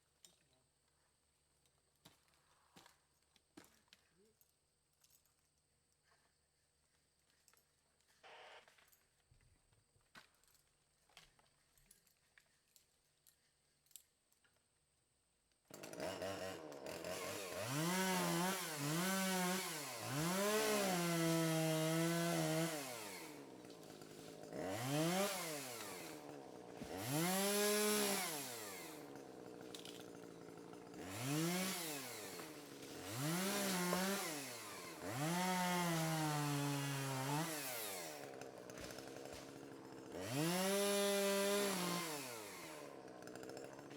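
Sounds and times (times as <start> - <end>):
chainsaw revving: 15.7 - 43.9.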